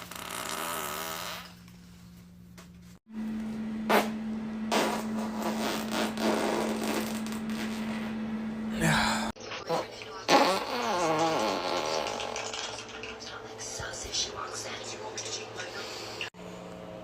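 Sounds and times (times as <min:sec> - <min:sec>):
person farting: 0:00.0 - 0:01.6, 0:03.9 - 0:08.1, 0:09.7 - 0:12.9
steady electrical hum: 0:00.0 - 0:16.9.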